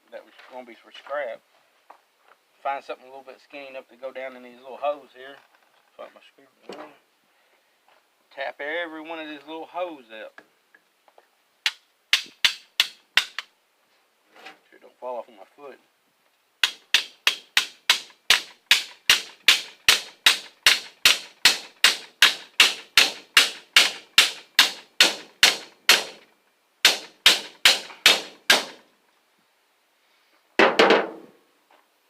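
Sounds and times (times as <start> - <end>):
hammer striking steel bar: 11.7 - 13.4, 16.6 - 26.2, 26.9 - 28.8.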